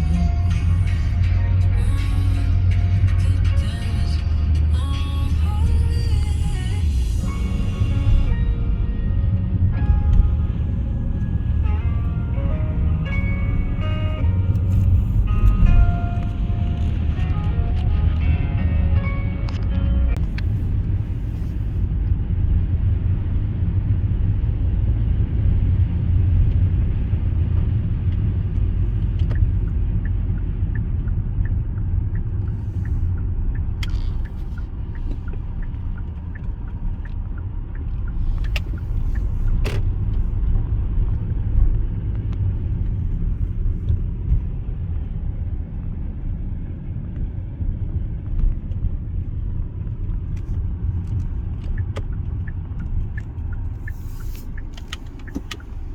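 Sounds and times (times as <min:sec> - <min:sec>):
car engine and tyre rumble: 0:00.0 - 0:55.9.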